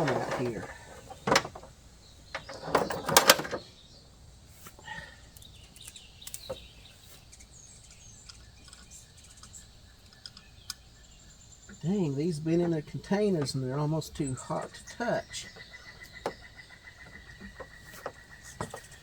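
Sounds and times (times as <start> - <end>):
equipment clicks and knocks: 0.0 - 3.7
faint bird chirps: 0.4 - 19.0.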